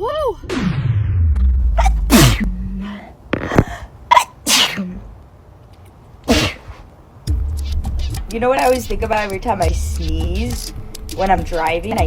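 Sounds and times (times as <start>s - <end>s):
person sneezing: 1.8s - 2.5s, 3.4s - 5.0s, 6.3s - 6.8s.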